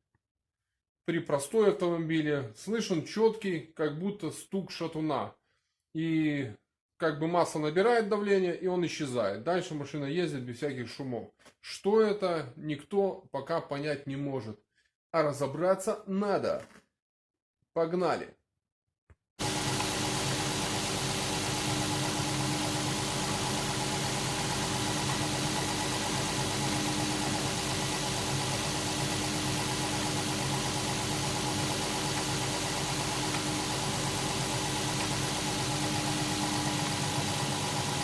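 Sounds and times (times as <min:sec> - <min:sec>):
car engine idling: 0:19.4 - 0:38.0
engine knocking: 0:19.4 - 0:38.0.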